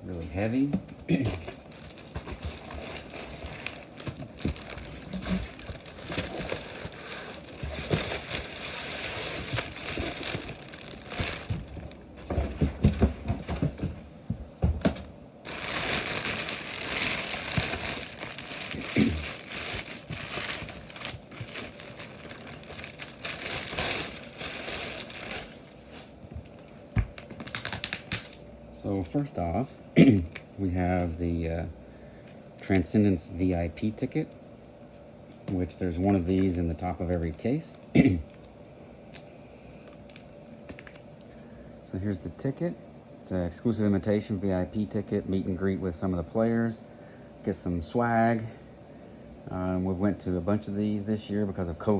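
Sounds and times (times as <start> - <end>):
packaging crinkling and rustling: 0.2 - 13.9, 15.4 - 28.4, 35.7 - 39.3, 39.9 - 41.2.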